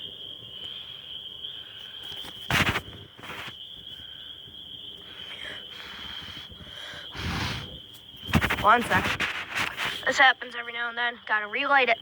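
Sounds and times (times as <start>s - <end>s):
cricket trill: 0.0s - 12.0s
loud rustling: 2.1s - 3.6s, 8.2s - 10.2s.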